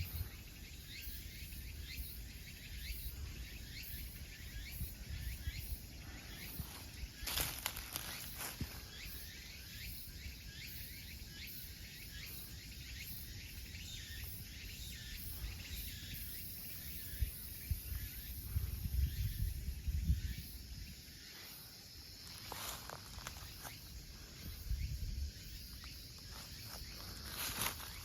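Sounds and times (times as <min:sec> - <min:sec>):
pulsing insect trill: 0:00.0 - 0:28.0.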